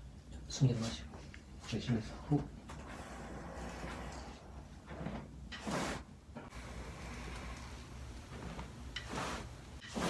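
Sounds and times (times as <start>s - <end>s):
low steady hum: 6.5s - 9.9s.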